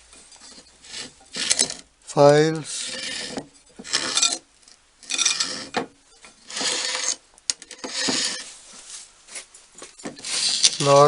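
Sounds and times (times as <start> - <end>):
metal files scraping: 0.1 - 1.8, 2.5 - 8.5, 10.0 - 11.0.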